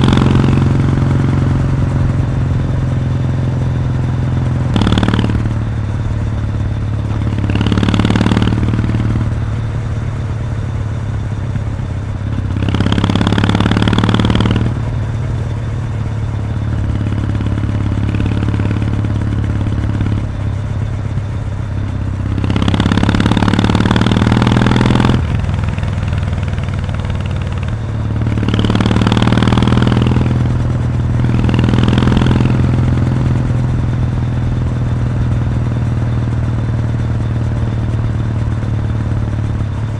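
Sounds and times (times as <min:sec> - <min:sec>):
motorcycle engine exhaust: 0:00.0 - 0:39.9.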